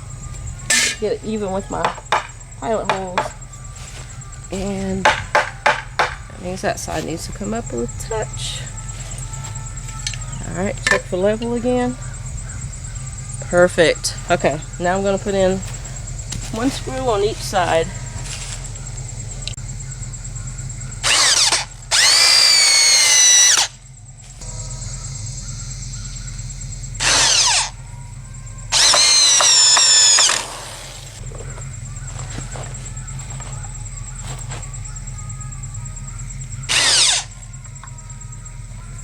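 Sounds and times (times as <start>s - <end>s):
power drill driving screws into wood: 21.0s - 23.7s, 27.0s - 27.7s, 28.8s - 31.2s, 36.7s - 37.3s.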